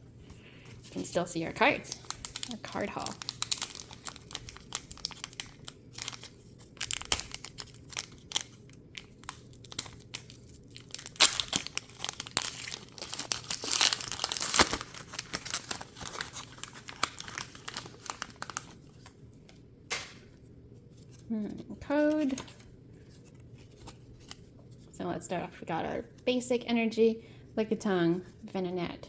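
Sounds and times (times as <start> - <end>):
foil wrapper crinkling and tearing: 0.8 - 19.2, 22.0 - 24.5.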